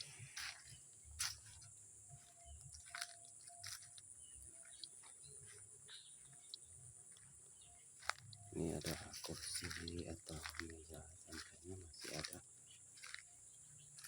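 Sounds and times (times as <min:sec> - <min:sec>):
bird chirps: 0:00.0 - 0:14.0.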